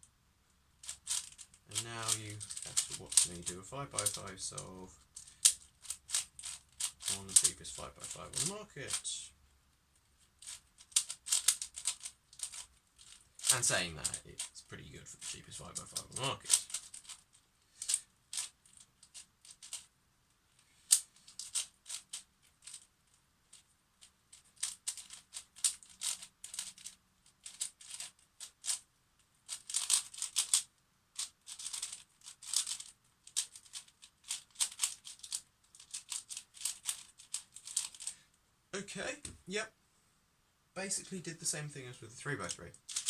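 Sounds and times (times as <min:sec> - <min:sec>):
plastic puzzle cube clicking turns: 0:00.8 - 0:09.0, 0:10.4 - 0:14.5, 0:15.2 - 0:19.9, 0:20.9 - 0:22.9, 0:24.3 - 0:28.8, 0:29.4 - 0:38.1, 0:42.4 - 0:43.0.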